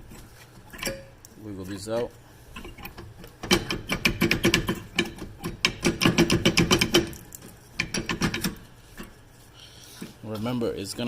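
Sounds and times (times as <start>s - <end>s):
metal clicks and clattering: 2.6s - 9.1s.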